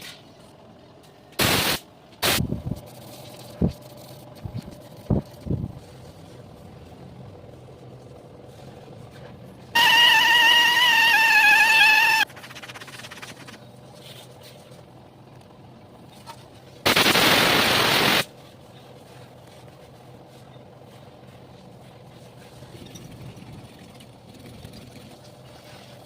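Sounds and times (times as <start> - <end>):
compressed air hissing: 1.4 - 2.4, 16.9 - 18.3
high-pitched air whine: 1.4 - 3.1, 16.8 - 18.3.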